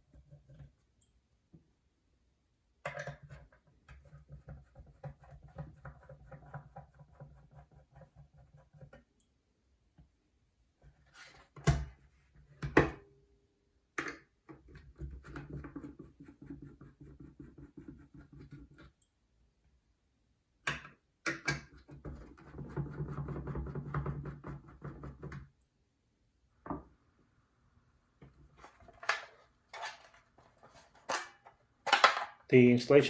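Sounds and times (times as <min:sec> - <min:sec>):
tools and plastic parts knocking: 0:28.7 - 0:32.5.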